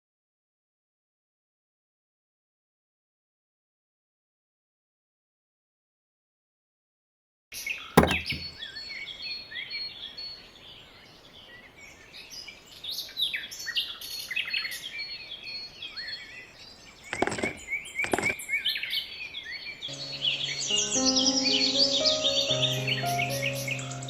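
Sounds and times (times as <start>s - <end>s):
small birds chirping: 8.0s - 24.0s.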